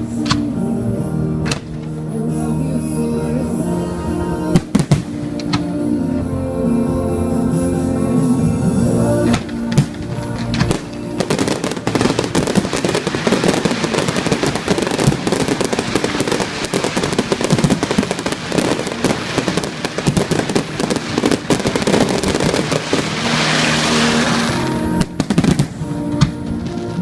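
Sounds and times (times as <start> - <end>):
fireworks bangs and crackles: 4.5 - 5.7, 9.3 - 27.0.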